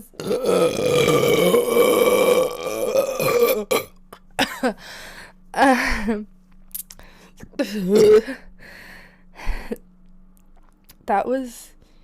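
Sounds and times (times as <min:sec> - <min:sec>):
woman burping: 0:00.0 - 0:04.8, 0:07.6 - 0:08.4.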